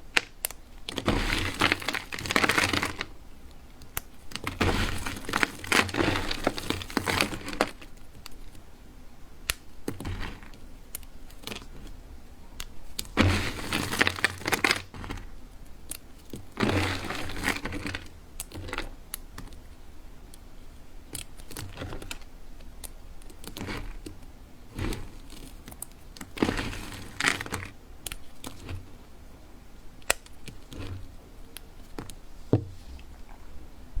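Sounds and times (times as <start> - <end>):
sharp cracks and clicks: 0.0 - 8.6, 9.4 - 11.9, 30.0 - 30.8
dry soap crunching: 0.0 - 32.3.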